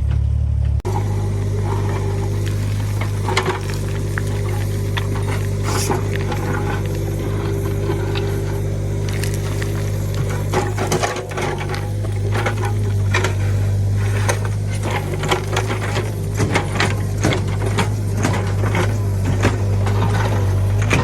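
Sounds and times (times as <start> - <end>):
excavator engine running: 0.0 - 21.0
machine knocks and clanks: 0.9 - 21.0.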